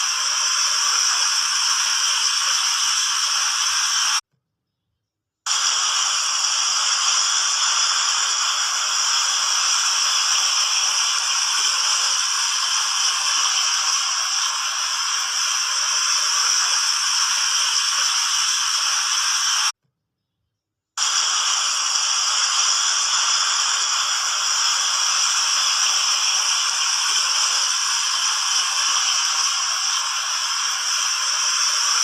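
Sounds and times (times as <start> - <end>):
water fountain splashing: 5.7 - 19.7, 21.2 - 32.0.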